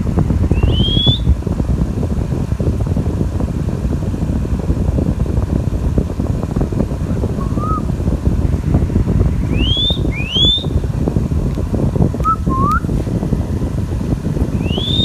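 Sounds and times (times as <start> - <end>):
low rumbling noise: 0.0 - 15.0
parrot rising whistle: 0.5 - 1.3, 7.4 - 7.9, 9.5 - 10.8, 12.2 - 12.9, 14.6 - 15.0.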